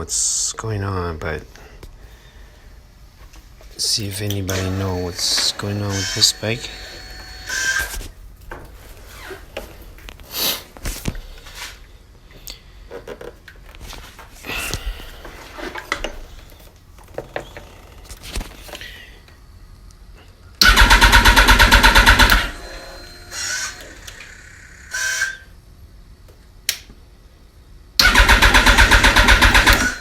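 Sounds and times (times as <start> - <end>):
motorcycle starter cranking: 4.3 - 7.7, 20.6 - 22.6, 28.0 - 30.0.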